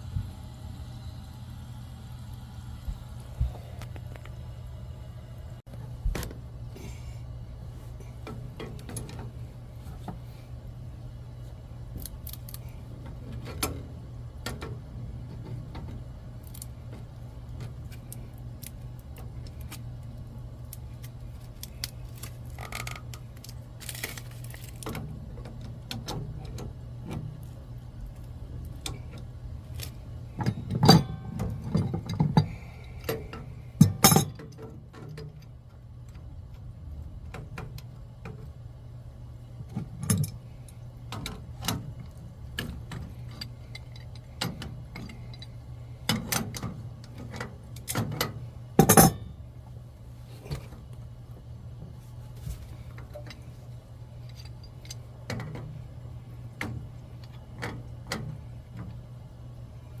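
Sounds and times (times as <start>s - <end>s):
steady low hum: 0.0s - 60.0s
tools tapping on metal fittings: 46.1s - 49.2s.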